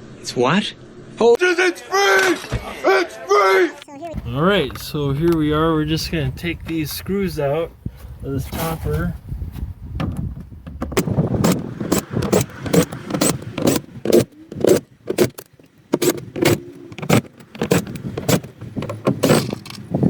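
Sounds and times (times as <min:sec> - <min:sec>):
metal clinking and clicking: 0:12.2 - 0:19.9.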